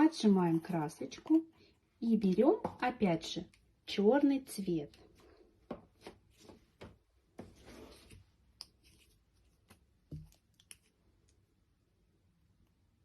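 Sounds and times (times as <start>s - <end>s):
paintbrush clicks and soft scrapes: 7.4s - 11.6s.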